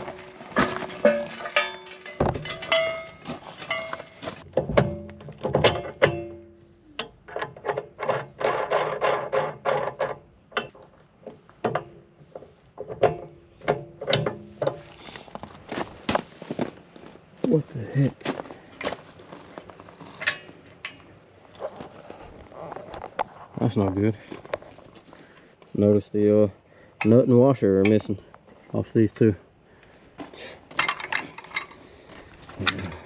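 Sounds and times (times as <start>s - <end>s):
steel parts clanking: 0.0s - 11.0s, 20.0s - 21.2s, 30.2s - 33.0s.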